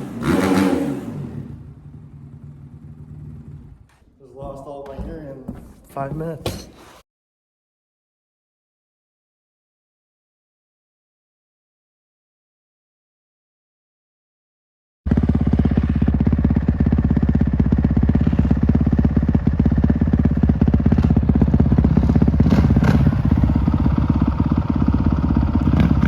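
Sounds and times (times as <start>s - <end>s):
dirt bike engine running: 0.0s - 4.1s, 15.1s - 26.0s.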